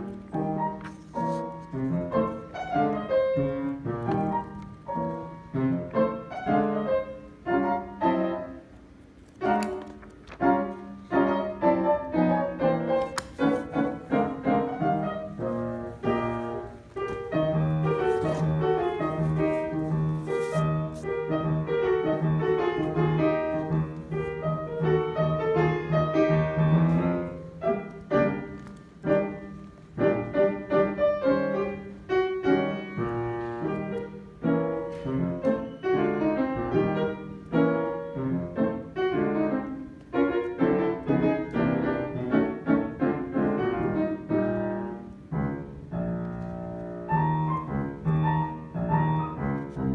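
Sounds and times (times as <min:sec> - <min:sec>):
piano playing: 0:00.0 - 0:49.9.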